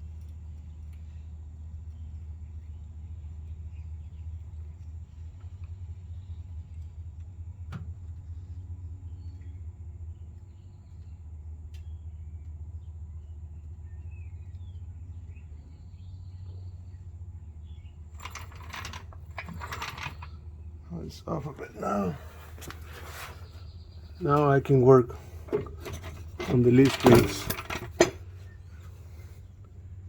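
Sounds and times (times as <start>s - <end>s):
low background rumble: 0.0s - 30.0s
clattering: 18.2s - 20.4s, 24.3s - 28.5s.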